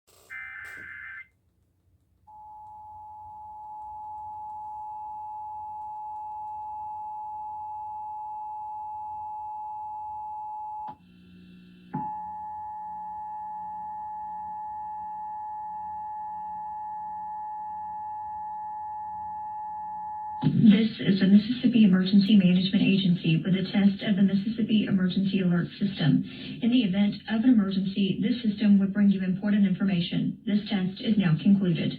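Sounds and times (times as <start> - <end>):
two-tone attention signal: 0.3 - 1.2.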